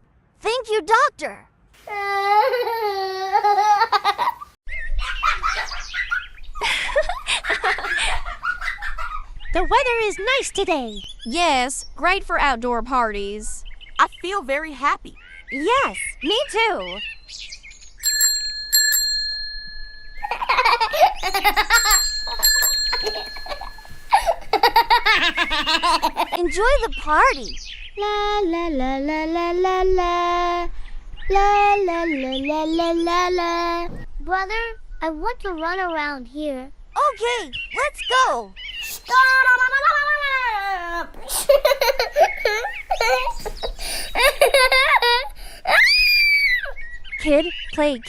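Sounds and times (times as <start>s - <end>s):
children laughing: 1.9s - 9.4s, 20.2s - 26.5s, 38.8s - 46.8s
bell-like chime: 18.0s - 24.3s.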